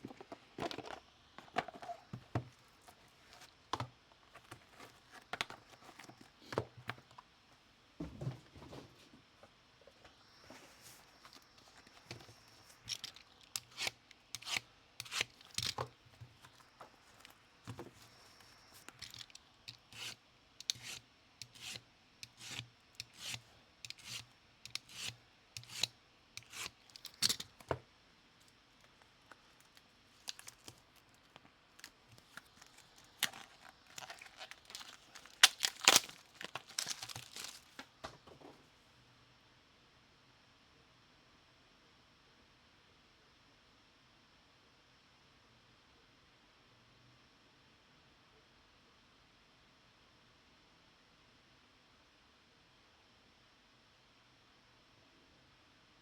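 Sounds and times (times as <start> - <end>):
foil packs tearing and crinkling: 12.7 - 15.8, 30.2 - 37.8.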